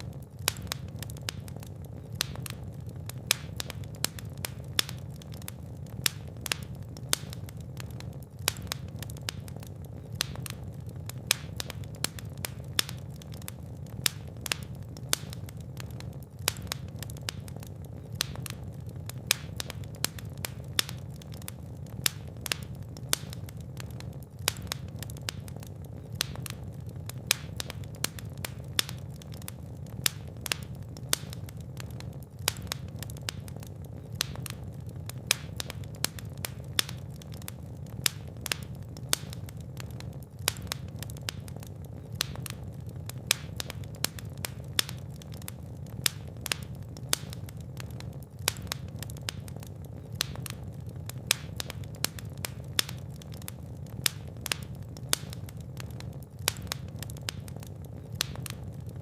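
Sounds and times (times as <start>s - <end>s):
fire crackling and popping: 0.0s - 59.0s
low rumble of flames: 0.0s - 59.0s.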